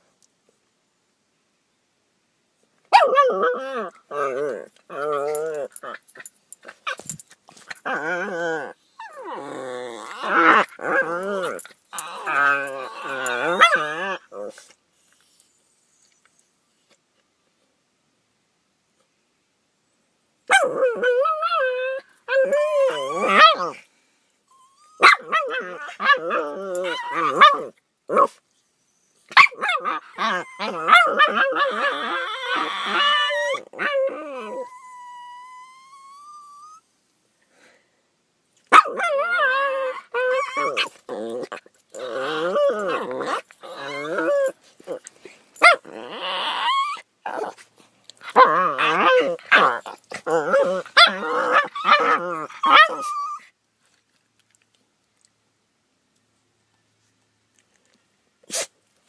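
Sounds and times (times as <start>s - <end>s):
dogs howling and grumbling: 3.0s - 6.2s, 6.9s - 14.6s, 20.5s - 23.8s, 24.6s - 28.3s, 29.4s - 36.8s, 38.7s - 53.4s.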